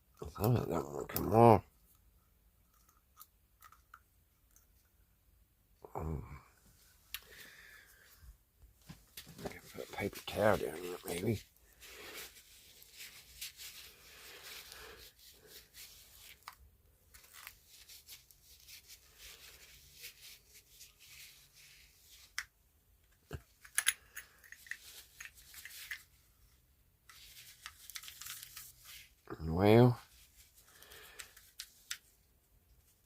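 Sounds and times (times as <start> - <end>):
paper towel rubbing and scraping: 9.5 - 16.4.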